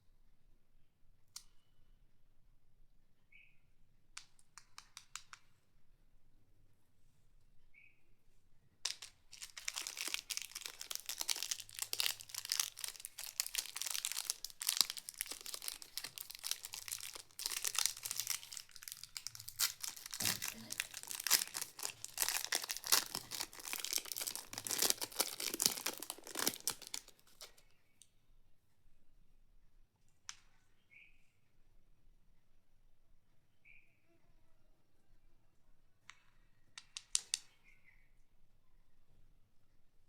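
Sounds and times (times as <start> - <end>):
wrapper crinkling and tearing: 8.9 - 27.6.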